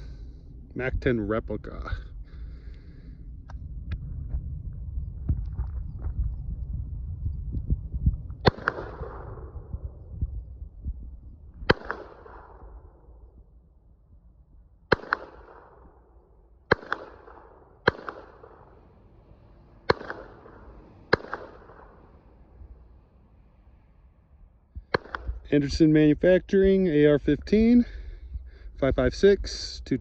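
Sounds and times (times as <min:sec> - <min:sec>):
pistol shots with echo: 0:08.4 - 0:09.9, 0:11.6 - 0:13.1, 0:14.9 - 0:18.8, 0:19.8 - 0:22.2, 0:24.8 - 0:25.4.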